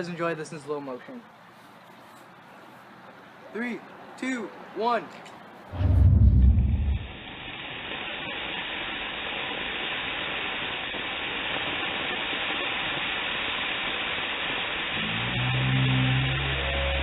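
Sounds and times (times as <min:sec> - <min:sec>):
soda geyser spraying hiss: 0:07.2 - 0:17.0.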